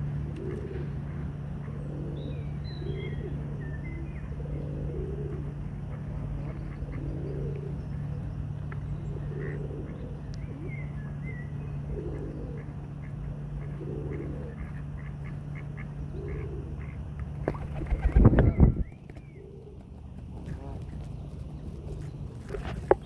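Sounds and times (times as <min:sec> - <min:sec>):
steady low hum: 0:00.0 - 0:23.0
ducks quacking: 0:12.0 - 0:17.1.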